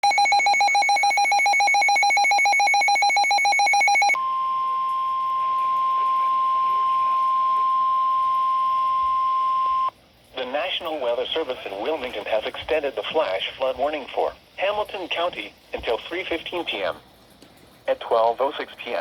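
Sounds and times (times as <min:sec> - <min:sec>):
rapidly pulsing electronic beep: 0:00.0 - 0:04.2
steady warning alarm tone: 0:00.0 - 0:09.9.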